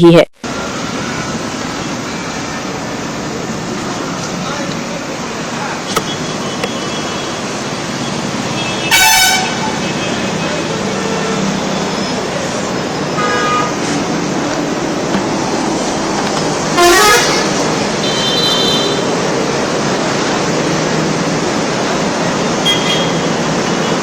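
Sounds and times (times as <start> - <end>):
road traffic noise: 0.4 - 24.0
vehicle horns honking: 8.5 - 11.8, 13.1 - 14.1, 16.2 - 19.3, 22.4 - 24.0.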